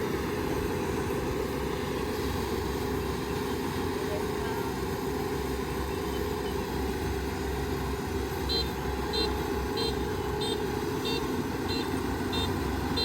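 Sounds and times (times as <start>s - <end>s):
diesel engine running: 0.0s - 13.0s
electronic warning beeper: 8.4s - 13.0s.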